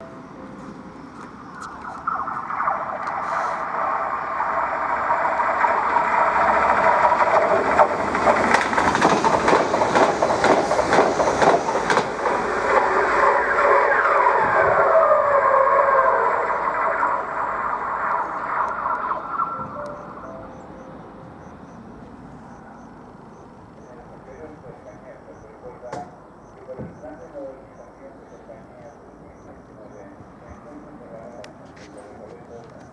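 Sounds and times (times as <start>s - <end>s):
train rumble: 0.0s - 32.9s
train wheels singing on rails: 3.1s - 25.4s.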